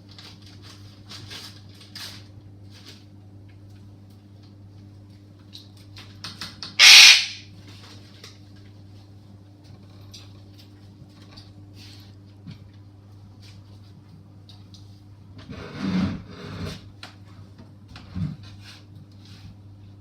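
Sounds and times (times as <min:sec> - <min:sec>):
parrot chirps and clicks: 0:06.8 - 0:07.4
parrot screaming: 0:06.8 - 0:07.4.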